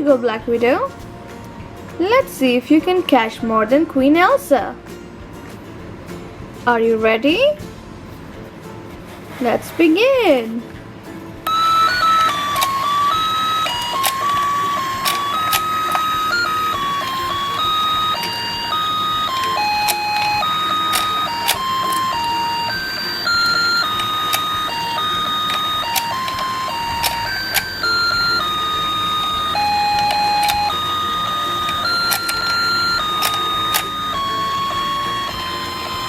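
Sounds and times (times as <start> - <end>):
toy electronic beeping melody: 11.5 - 36.0.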